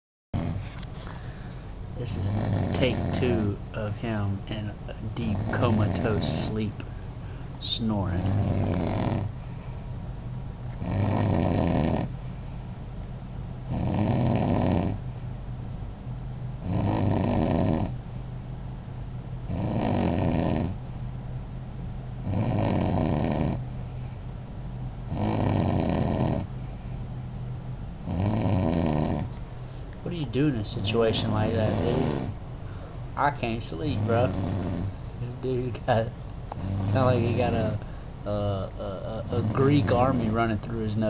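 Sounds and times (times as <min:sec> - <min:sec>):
man snoring loudly: 0:00.4 - 0:00.6, 0:02.0 - 0:03.6, 0:05.1 - 0:06.7, 0:08.0 - 0:09.3, 0:10.8 - 0:12.1, 0:13.7 - 0:15.0, 0:16.6 - 0:18.0, 0:19.5 - 0:20.8, 0:22.2 - 0:23.6, 0:25.1 - 0:26.5, 0:28.0 - 0:29.3, 0:30.7 - 0:32.4, 0:33.8 - 0:35.7, 0:36.6 - 0:40.6.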